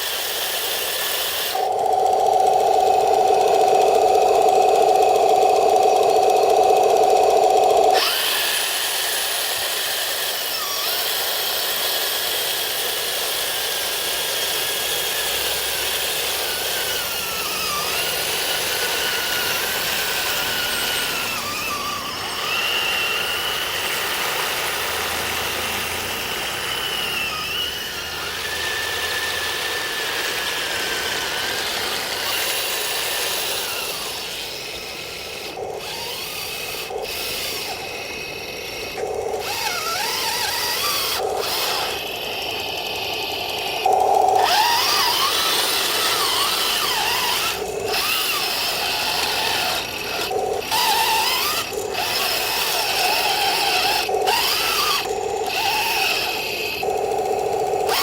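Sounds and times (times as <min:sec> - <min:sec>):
electric motor whine: 0:00.0 - 0:58.0
steady grinding of metal tracks: 0:14.0 - 0:58.0.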